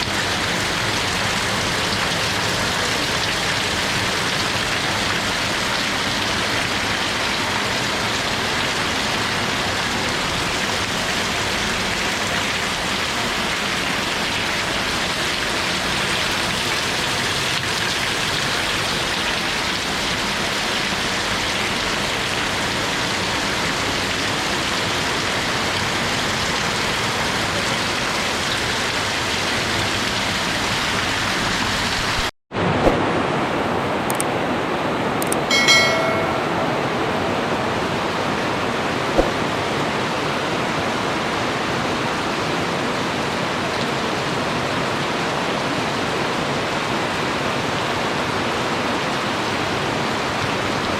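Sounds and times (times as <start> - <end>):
steady rain hiss: 0.0 - 36.4.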